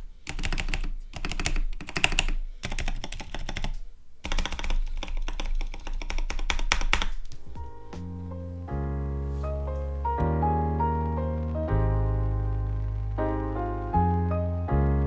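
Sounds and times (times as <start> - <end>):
mechanical keyboard typing: 0.0 - 7.8.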